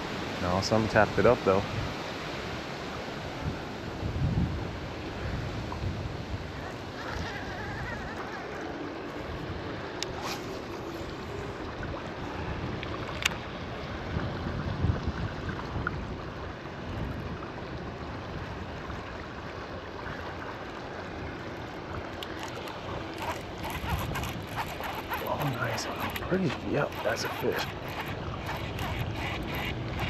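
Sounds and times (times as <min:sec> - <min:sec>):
choppy water: 0:00.0 - 0:30.0
wind buffeting microphone: 0:03.3 - 0:18.8, 0:21.9 - 0:30.0.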